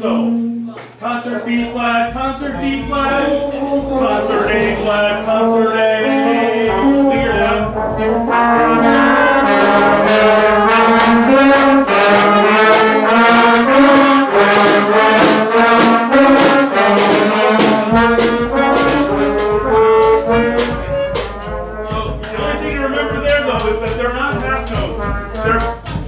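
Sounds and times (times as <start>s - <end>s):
brass band horns playing: 0.0s - 26.0s.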